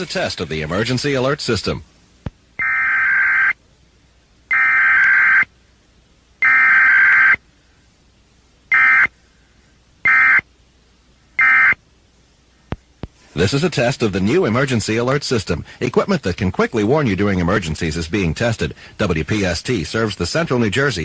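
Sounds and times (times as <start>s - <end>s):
digital data bursts: 2.6s - 3.6s, 4.5s - 5.5s, 6.4s - 7.4s.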